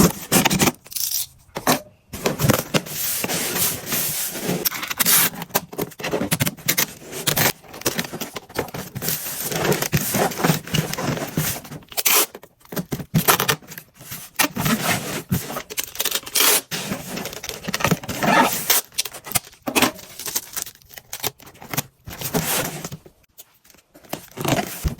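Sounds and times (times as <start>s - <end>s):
packing material crinkling: 14.5s - 23.1s.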